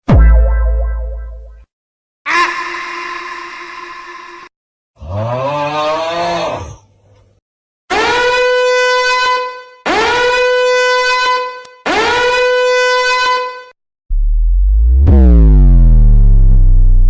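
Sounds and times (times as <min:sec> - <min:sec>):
horn blasts: 0:07.9 - 0:13.7
deep low rumble: 0:14.1 - 0:17.0.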